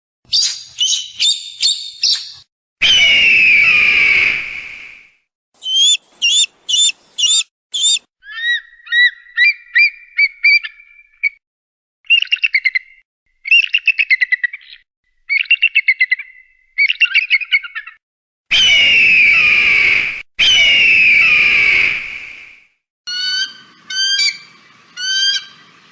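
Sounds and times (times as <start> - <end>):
eagle calling: 0.3 - 2.3, 5.6 - 10.8.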